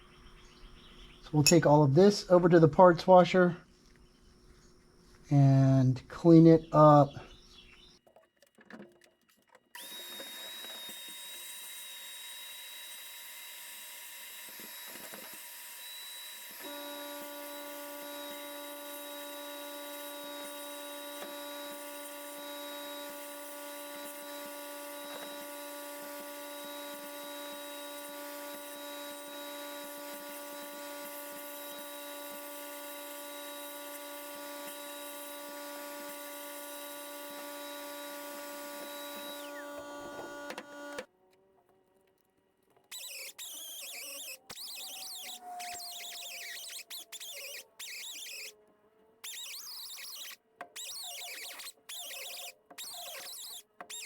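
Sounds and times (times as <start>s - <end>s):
electric motor hum: 9.8s - 41.1s, 42.9s - 48.5s, 49.2s - 54.0s.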